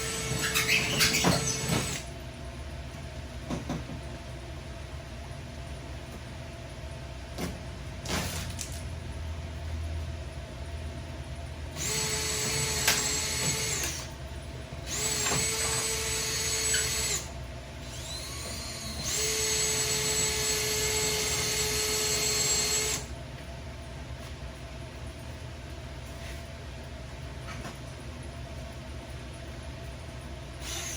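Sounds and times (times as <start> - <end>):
power drill whining: 0.0 - 2.1, 11.8 - 14.1, 14.8 - 23.1, 30.6 - 30.9.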